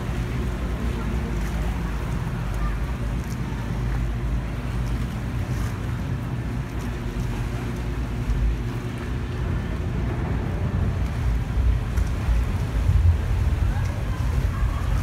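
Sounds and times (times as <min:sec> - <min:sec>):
motorboat engine humming: 0:00.0 - 0:15.0
water noise: 0:00.0 - 0:15.0
wind noise: 0:09.6 - 0:15.0.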